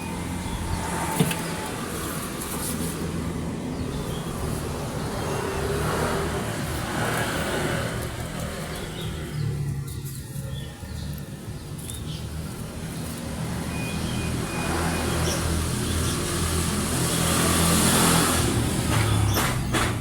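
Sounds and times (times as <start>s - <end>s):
vehicle engine passing by: 0.0s - 20.0s.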